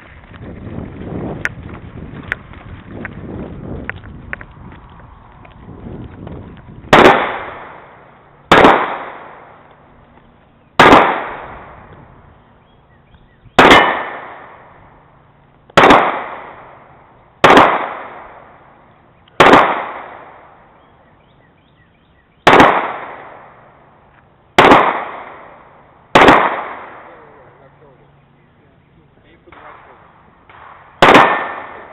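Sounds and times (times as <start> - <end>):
pistol shots with echo: 6.9 - 9.6, 10.8 - 11.9, 13.5 - 14.8, 15.8 - 18.6, 19.4 - 20.6, 22.4 - 23.6, 24.6 - 27.5, 29.4 - 31.9.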